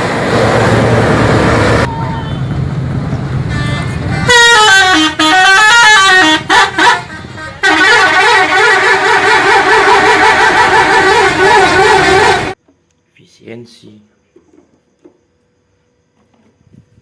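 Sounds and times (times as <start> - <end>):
bus engine rumble: 0.0 - 12.6
musical bus horn melody: 3.4 - 12.6.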